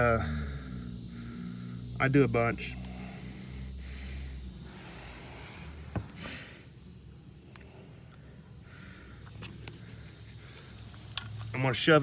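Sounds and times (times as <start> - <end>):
air hissing from tire: 2.6 - 6.8.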